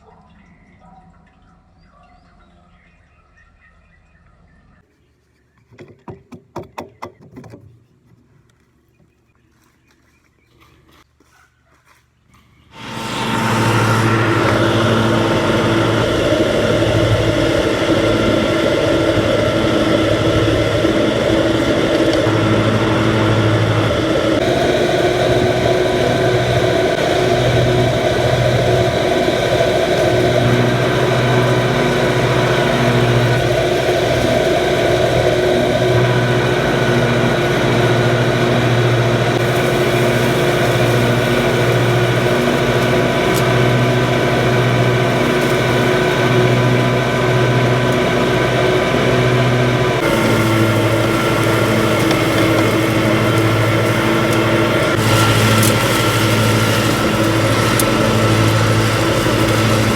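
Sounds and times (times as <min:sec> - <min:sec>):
lawn mower engine running: 0:12.7 - 0:59.9.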